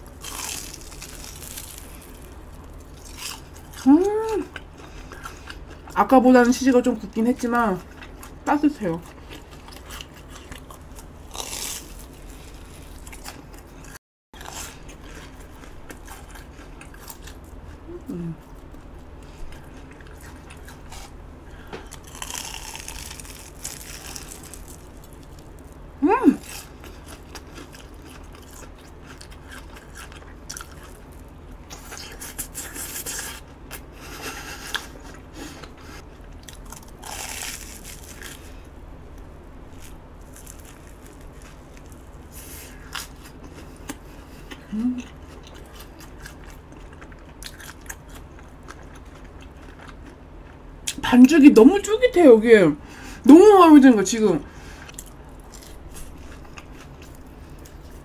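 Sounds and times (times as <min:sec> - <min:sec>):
crunchy bites of fried crust: 0:00.0 - 0:03.9, 0:09.1 - 0:17.6, 0:19.7 - 0:25.8, 0:26.4 - 0:50.2
chewing: 0:07.8 - 0:17.8, 0:18.4 - 0:25.8, 0:26.4 - 0:38.5, 0:39.8 - 0:51.0.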